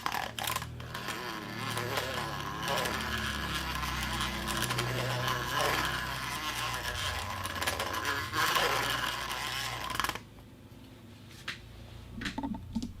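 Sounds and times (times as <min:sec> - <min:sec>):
creaks and clicks: 0:00.0 - 0:10.2
plastic tube crackling: 0:00.0 - 0:10.3, 0:12.2 - 0:13.0.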